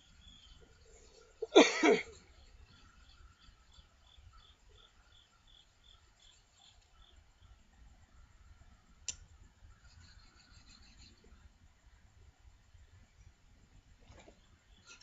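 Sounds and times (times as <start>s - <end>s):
insect chirping: 0.0s - 12.0s.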